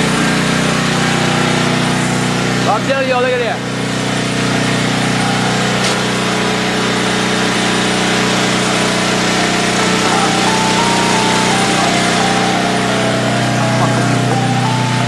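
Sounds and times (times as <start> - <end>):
generator engine running: 0.0 - 15.0.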